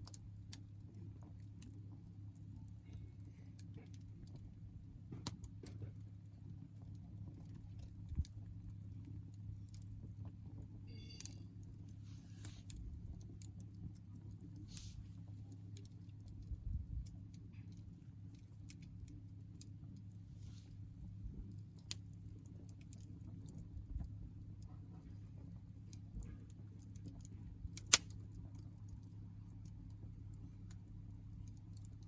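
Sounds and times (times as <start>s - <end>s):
campfire crackling: 0.0s - 32.0s
steady low hum: 0.0s - 32.0s.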